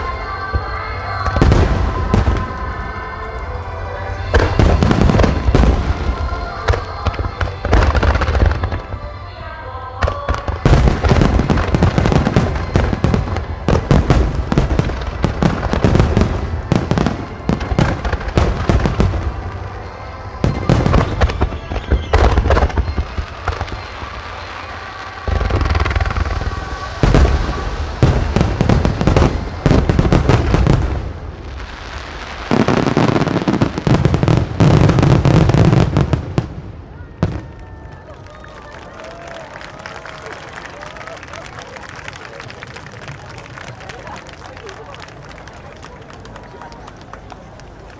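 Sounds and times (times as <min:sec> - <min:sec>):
music playing: 0:00.0 - 0:36.5
fireworks bangs and crackles: 0:00.0 - 0:47.9.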